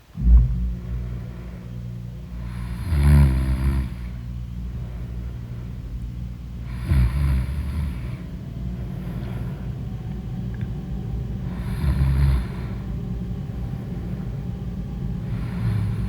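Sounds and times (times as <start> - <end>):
person snoring loudly: 2.4 - 4.2, 6.6 - 8.2, 11.5 - 12.8, 15.3 - 16.0.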